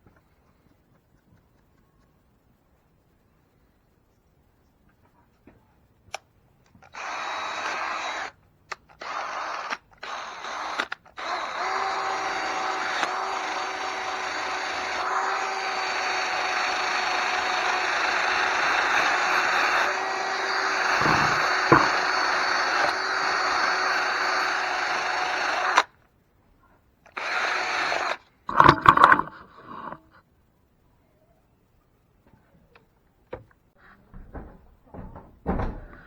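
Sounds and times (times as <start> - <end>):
wire wheel power tool whining: 9.0 - 26.0, 27.1 - 30.0
knock: 21.0 - 22.1, 34.2 - 36.0
clicks: 28.5 - 30.2.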